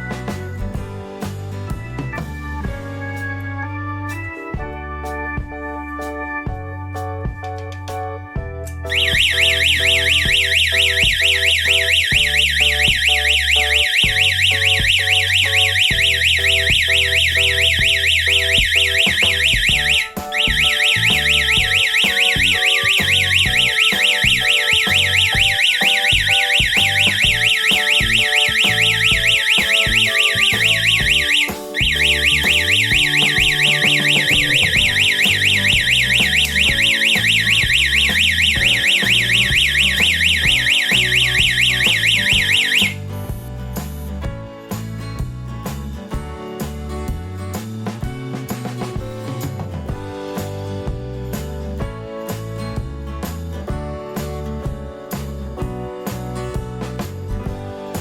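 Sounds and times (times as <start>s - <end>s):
background music: 0.0s - 58.0s
electronic alarm siren warbling: 8.9s - 43.0s.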